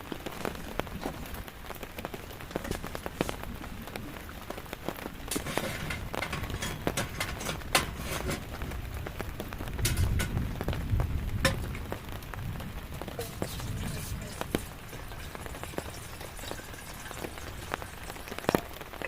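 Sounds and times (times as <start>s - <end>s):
rain falling: 0.0s - 19.0s
sharp drips and taps: 4.4s - 10.8s, 11.4s - 12.0s, 13.2s - 19.0s.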